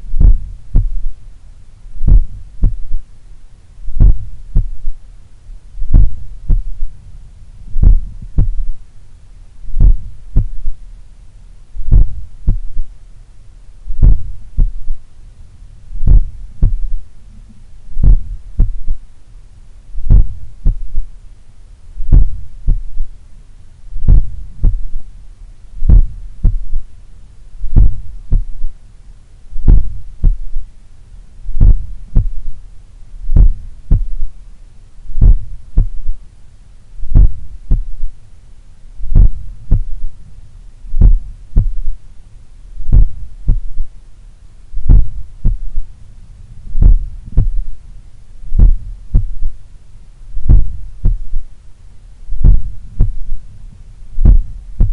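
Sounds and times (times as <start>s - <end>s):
heartbeat through stethoscope: 0.0s - 1.2s, 2.0s - 3.1s, 3.9s - 5.0s, 5.8s - 6.9s, 7.7s - 8.8s, 9.7s - 10.8s, 11.8s - 12.9s, 13.9s - 15.0s, 16.0s - 17.0s, 17.9s - 19.0s, 20.0s - 21.1s, 22.0s - 23.1s, 24.0s - 25.0s, 25.8s - 26.9s, 27.6s - 28.8s, 29.6s - 30.7s, 31.5s - 32.6s, 33.3s - 34.4s, 35.1s - 36.2s, 37.0s - 38.1s, 39.0s - 40.1s, 40.9s - 42.0s, 42.8s - 43.9s, 44.8s - 45.9s, 46.7s - 47.8s, 48.5s - 49.6s, 50.4s - 51.5s, 52.3s - 53.4s, 54.2s - 54.9s.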